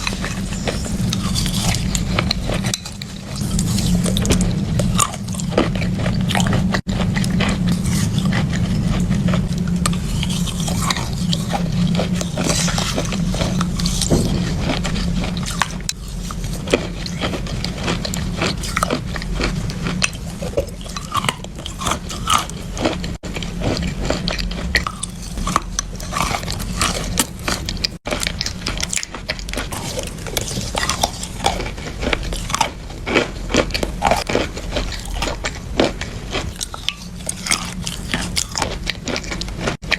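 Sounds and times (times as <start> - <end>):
chewing crunchy chalk: 0.0 - 39.9
low hum: 0.0 - 39.9.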